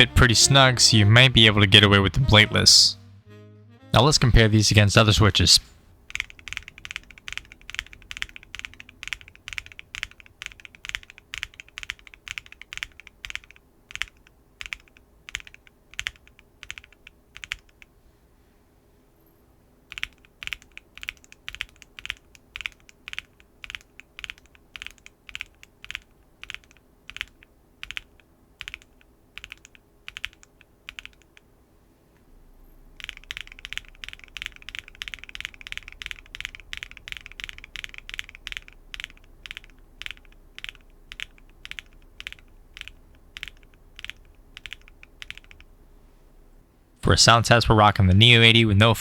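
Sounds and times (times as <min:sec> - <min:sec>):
mechanical keyboard clacks: 0:06.1 - 0:17.9, 0:19.9 - 0:31.5, 0:33.0 - 0:45.7.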